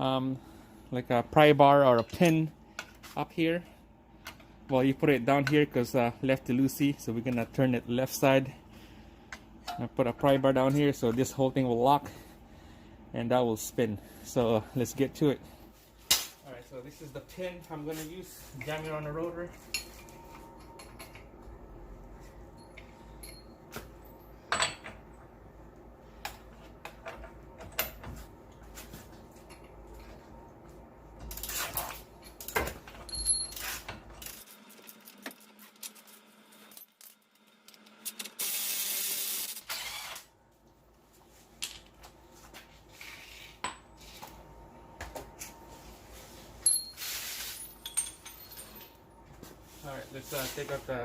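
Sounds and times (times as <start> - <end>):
metal tools clinking: 22.6 - 23.7, 31.4 - 34.0, 46.6 - 49.1
steady hiss: 49.8 - 51.0.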